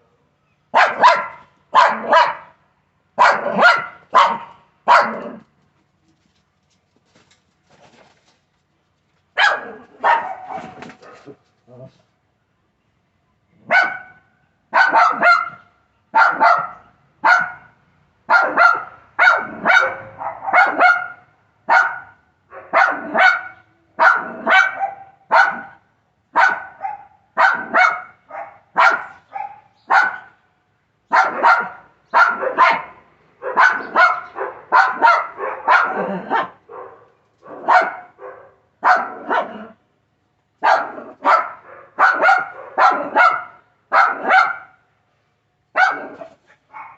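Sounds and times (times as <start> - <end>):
small dog barking: 0.7 - 2.6, 3.2 - 5.4, 9.4 - 11.4, 13.6 - 30.4, 31.1 - 39.8, 40.6 - 44.8, 45.7 - 46.9.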